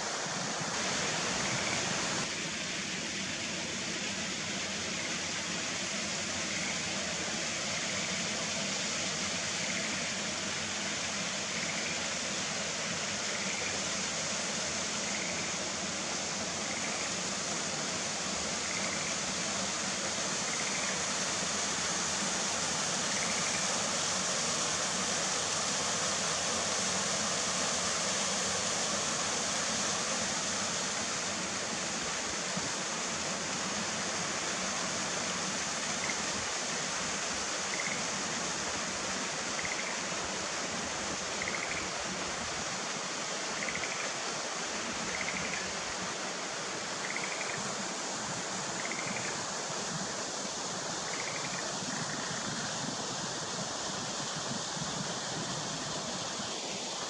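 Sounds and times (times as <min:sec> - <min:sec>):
running water: 0:00.0 - 0:57.0
tree frogs calling: 0:01.4 - 0:01.9, 0:11.5 - 0:12.0, 0:13.3 - 0:13.8, 0:15.0 - 0:15.6, 0:16.6 - 0:17.2, 0:18.6 - 0:19.2, 0:20.4 - 0:21.0, 0:23.1 - 0:23.6, 0:35.9 - 0:36.3, 0:37.7 - 0:38.1, 0:39.5 - 0:40.0, 0:41.3 - 0:41.9, 0:43.5 - 0:44.2, 0:45.0 - 0:45.8, 0:47.0 - 0:47.6, 0:48.7 - 0:49.4, 0:51.0 - 0:52.6.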